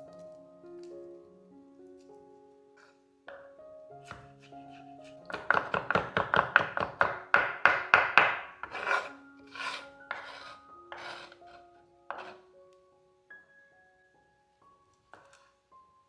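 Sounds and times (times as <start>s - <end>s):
soft background music: 0.0s - 16.0s
knife cutting on cutting board: 4.0s - 6.2s, 8.6s - 11.5s, 12.1s - 12.4s.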